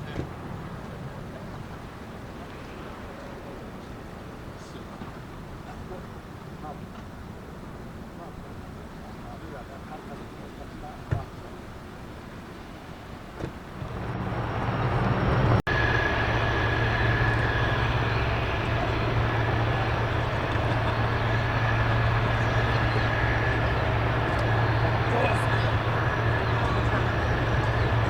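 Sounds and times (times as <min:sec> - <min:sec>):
jet engine whine and hum: 0:12.7 - 0:28.0.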